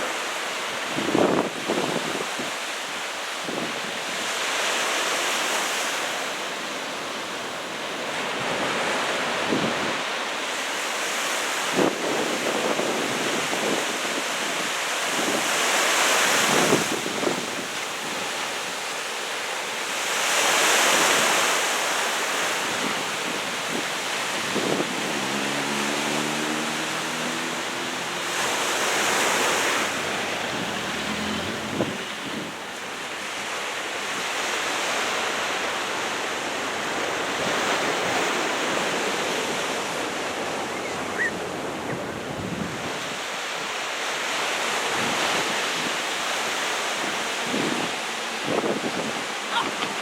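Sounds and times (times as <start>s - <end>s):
heavy surf breaking: 0.0s - 50.0s
wind buffeting microphone: 22.5s - 33.4s, 37.0s - 43.3s, 47.0s - 50.0s.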